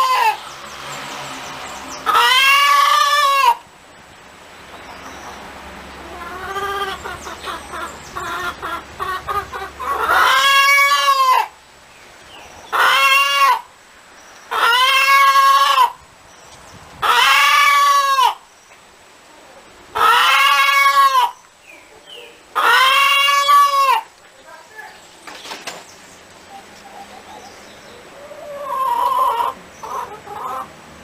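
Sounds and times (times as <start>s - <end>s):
hen clucking: 0.0s - 0.4s, 2.0s - 3.6s, 4.7s - 11.6s, 12.7s - 13.7s, 14.5s - 16.0s, 17.0s - 18.4s, 19.9s - 25.0s, 26.2s - 30.8s
hen long drawn-out calls: 0.0s - 0.4s, 2.0s - 3.7s, 6.0s - 11.6s, 12.7s - 13.7s, 14.5s - 16.0s, 17.0s - 18.5s, 19.9s - 24.2s, 26.4s - 30.8s.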